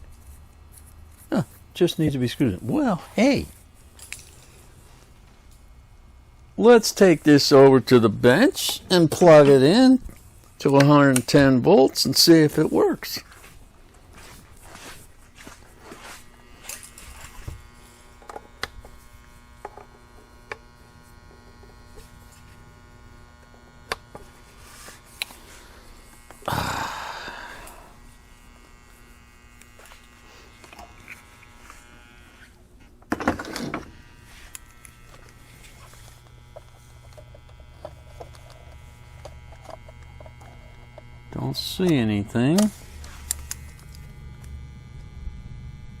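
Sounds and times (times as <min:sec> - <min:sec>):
steady electrical buzz: 0:00.0 - 0:46.0.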